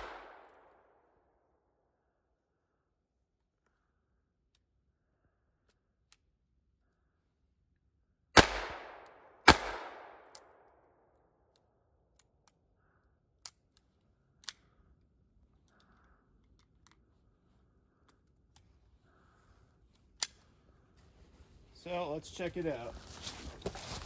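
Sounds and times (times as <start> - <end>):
pistol shots with echo: 0.0 - 0.8, 8.4 - 10.6.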